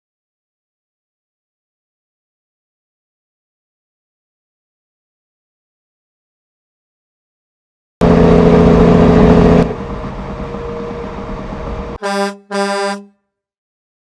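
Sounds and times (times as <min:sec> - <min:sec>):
heavy engine running: 0:08.0 - 0:13.1
short horn honks: 0:12.0 - 0:13.2.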